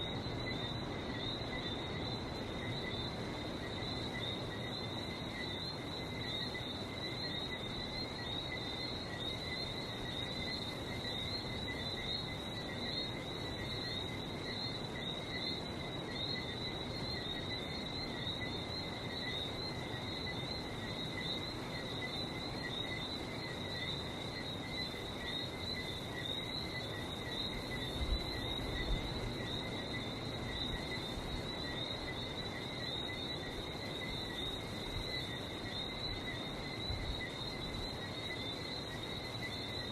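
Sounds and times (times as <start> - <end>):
frogs whistling chorus: 0.0 - 39.9.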